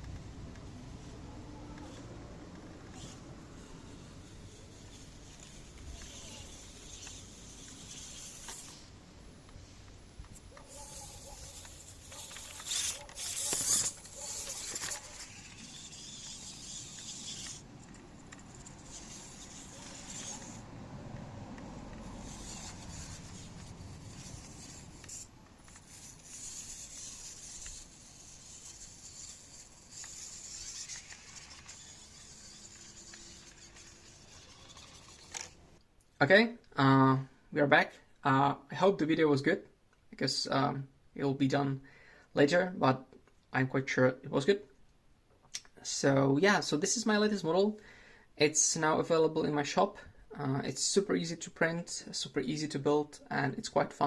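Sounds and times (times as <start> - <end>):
toy car motor and gears whirring: 0.0 - 35.6.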